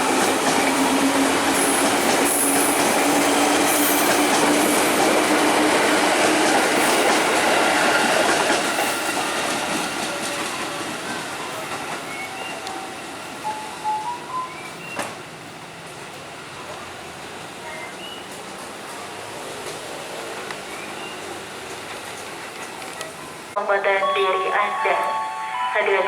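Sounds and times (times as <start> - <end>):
train wheels clacking on track: 0.0 - 15.2, 17.9 - 23.2.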